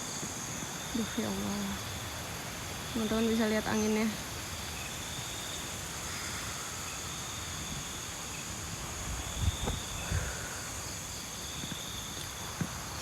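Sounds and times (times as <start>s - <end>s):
insects trilling: 0.0s - 13.0s
wind rumble on microphone: 8.7s - 10.6s.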